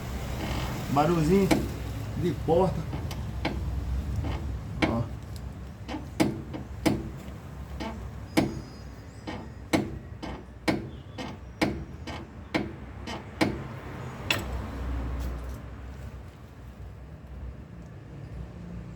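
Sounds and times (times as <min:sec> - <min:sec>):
suspension clicking and knocking: 0:00.3 - 0:14.7.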